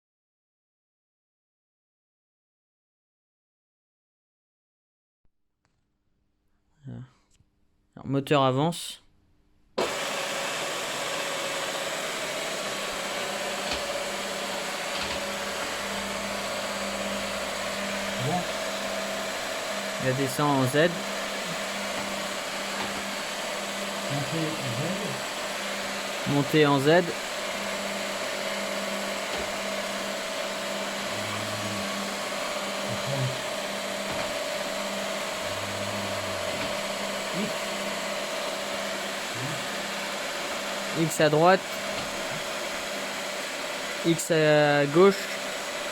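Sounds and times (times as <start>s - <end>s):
milling machine motor whirring: 9.9s - 45.9s
deeper hum: 31.0s - 32.2s, 34.1s - 37.6s.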